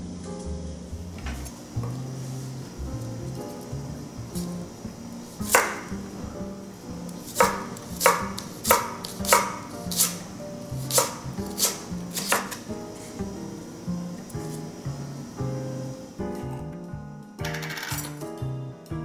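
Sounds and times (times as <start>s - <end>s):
background music: 0.0s - 19.0s
knife chopping on cutting board: 5.4s - 5.9s, 7.2s - 10.2s, 10.8s - 12.7s.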